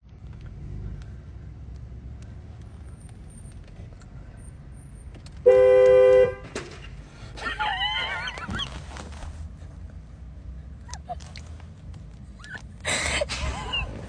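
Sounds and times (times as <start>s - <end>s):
low background rumble: 0.0s - 14.0s
car horn blast: 5.4s - 6.6s.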